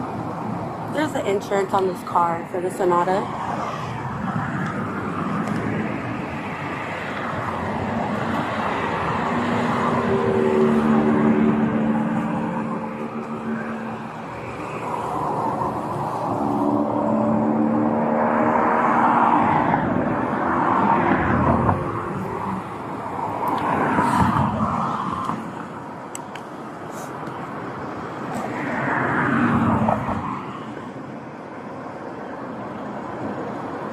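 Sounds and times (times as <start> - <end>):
cars passing by: 0.0 - 33.9.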